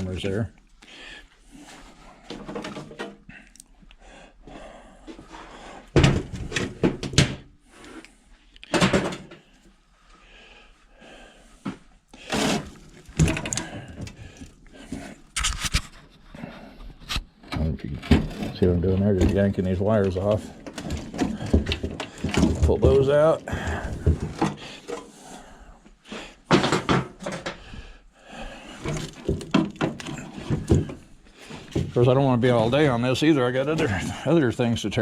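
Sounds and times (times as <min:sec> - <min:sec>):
metal parts knocking and rattling: 0:13.1 - 0:14.2, 0:28.8 - 0:31.0.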